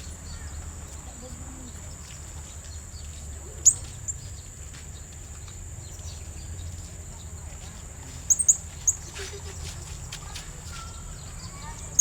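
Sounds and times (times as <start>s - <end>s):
high insect drone: 0.0s - 12.0s
parrot sharp high chirps: 3.6s - 3.9s.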